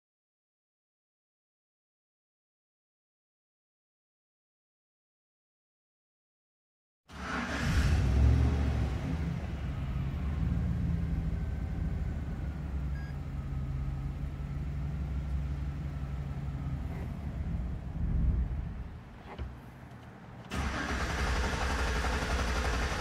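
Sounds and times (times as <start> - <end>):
pickup engine idling: 9.0 - 23.0.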